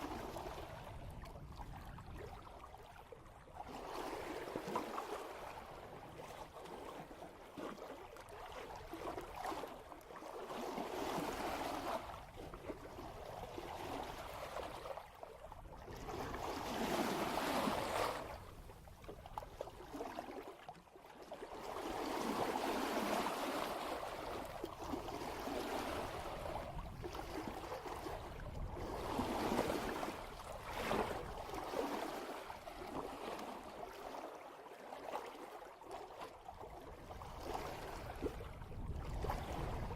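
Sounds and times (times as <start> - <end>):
water rushing along boat hull: 0.0 - 39.9.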